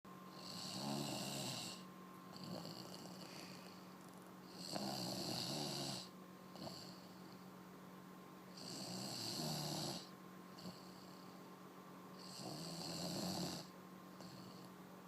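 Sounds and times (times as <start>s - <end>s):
person snoring: 0.3s - 3.7s, 4.5s - 7.1s, 8.6s - 11.1s, 12.2s - 14.7s
soft breathing: 1.7s - 4.6s.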